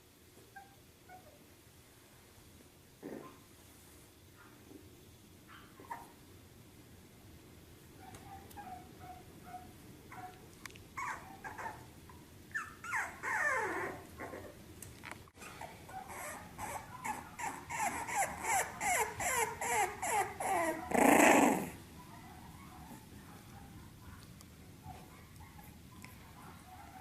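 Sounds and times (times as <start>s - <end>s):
puppy whimpering: 0.5s - 1.4s, 8.0s - 10.4s, 11.0s - 11.9s, 12.5s - 14.6s, 15.4s - 21.8s
puppy yelp: 0.5s - 1.4s, 5.5s - 6.2s, 8.0s - 10.4s, 11.0s - 11.9s, 12.5s - 14.5s, 15.4s - 24.2s.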